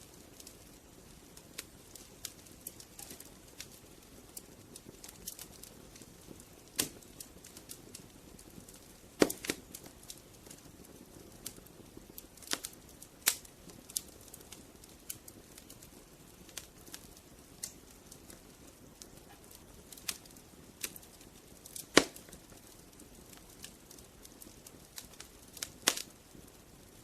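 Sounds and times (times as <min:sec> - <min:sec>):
fire hiss: 0:00.0 - 0:27.0
logs popping and snapping: 0:06.8 - 0:07.0, 0:09.2 - 0:09.7, 0:21.6 - 0:22.4.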